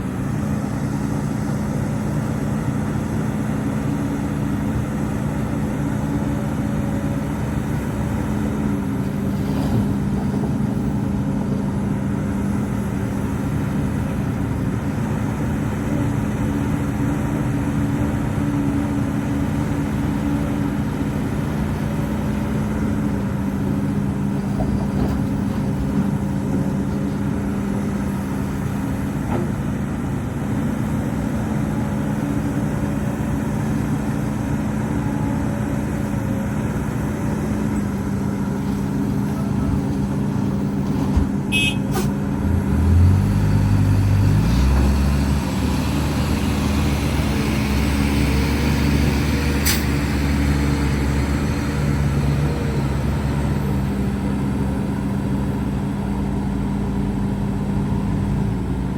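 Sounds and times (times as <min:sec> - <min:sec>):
diesel earthmoving machinery running: 0:00.0 - 0:58.9.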